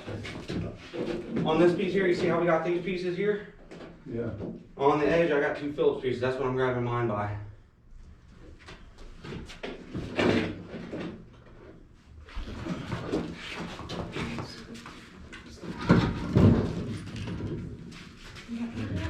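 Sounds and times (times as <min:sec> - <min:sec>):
heavy table thumping and scraping: 0:15.6 - 0:18.1.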